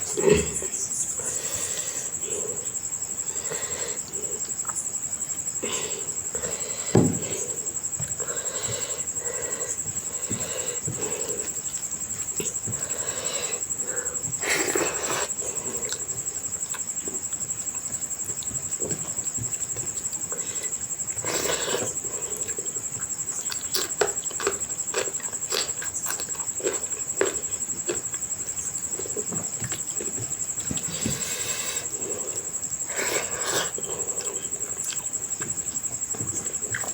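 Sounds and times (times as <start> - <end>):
wet chewing and lip smacks: 14.6 - 31.0, 32.2 - 36.9.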